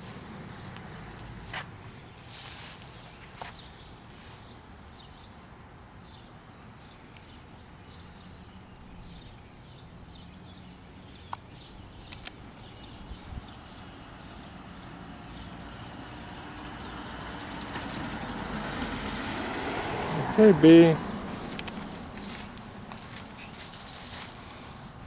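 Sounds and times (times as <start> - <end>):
vehicle passing: 0.0 - 4.4, 13.8 - 25.0
small birds chirping: 0.0 - 5.4, 6.1 - 25.0
low rumble of traffic: 0.0 - 25.0.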